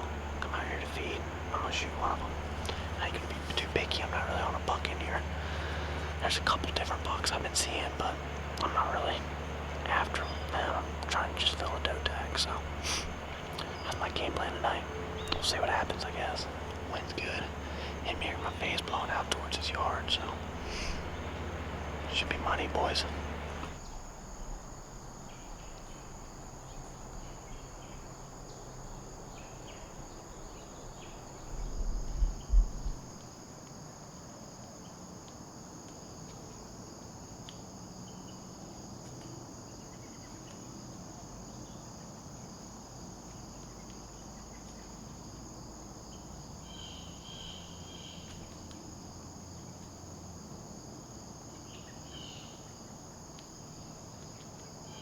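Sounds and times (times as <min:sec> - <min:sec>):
low rumble: 0:00.0 - 0:33.2
insects trilling: 0:00.0 - 0:55.0.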